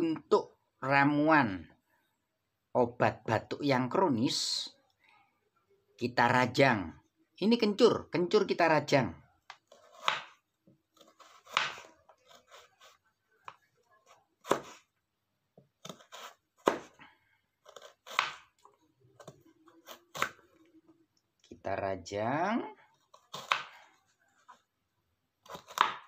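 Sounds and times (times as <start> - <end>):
knife chopping ginger: 9.5 - 10.4, 11.0 - 14.9, 15.6 - 17.0, 17.6 - 20.5, 23.0 - 24.6, 25.4 - 26.0.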